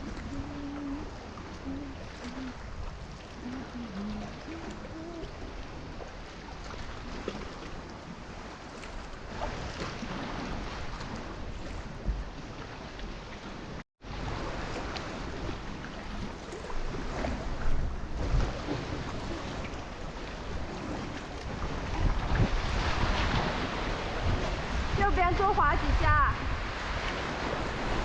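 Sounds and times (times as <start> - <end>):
water sloshing and splashing: 0.0 - 28.0
wind buffeting microphone: 14.2 - 28.0.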